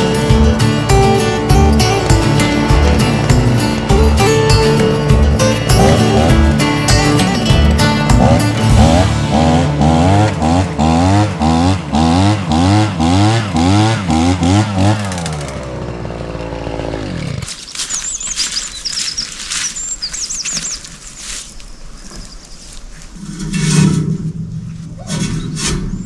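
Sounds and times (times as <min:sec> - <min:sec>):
background music with steady beat: 0:00.0 - 0:13.7
small bird chirping: 0:17.5 - 0:23.2.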